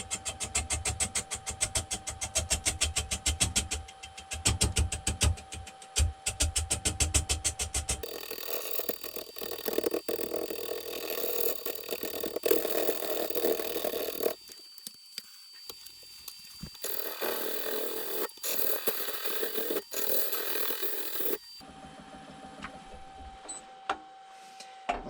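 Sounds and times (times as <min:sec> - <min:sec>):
turning tool shaving wood: 0:08.0 - 0:21.6
wood lathe whine: 0:08.0 - 0:21.7.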